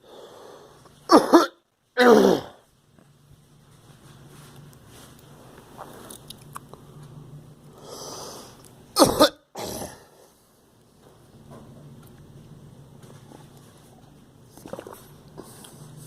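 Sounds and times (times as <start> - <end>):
soft breath: 0.0 - 1.0, 7.7 - 8.7
girl coughing: 1.1 - 2.6, 9.0 - 10.0.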